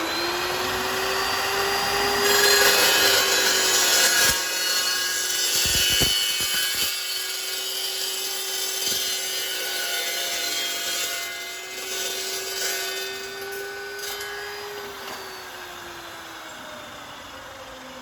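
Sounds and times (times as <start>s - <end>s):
circular saw cutting steel: 0.0s - 17.1s.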